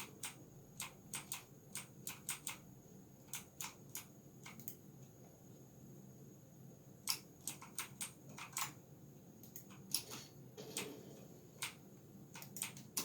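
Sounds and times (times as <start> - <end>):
mechanical keyboard typing: 0.0 - 2.6, 3.2 - 4.8, 7.0 - 8.8, 9.4 - 11.0, 11.6 - 13.0.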